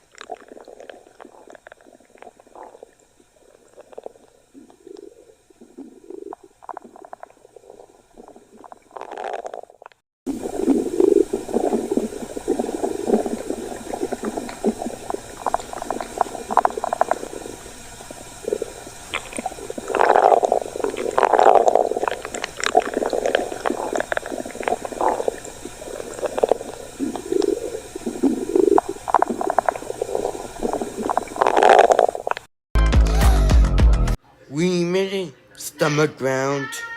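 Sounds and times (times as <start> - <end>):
stomach growling: 0.0 - 32.5
steady hiss: 10.3 - 31.7.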